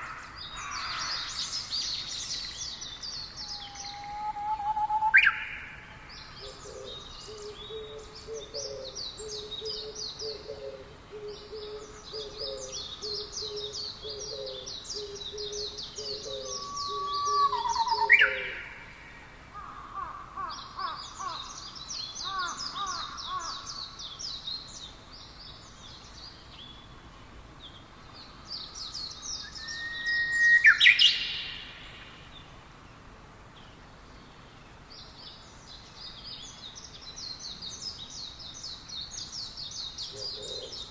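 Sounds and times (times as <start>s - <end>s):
birds chirping trills: 0.0s - 40.9s
loud rising bird call: 3.5s - 5.6s, 16.4s - 18.8s, 29.4s - 31.6s.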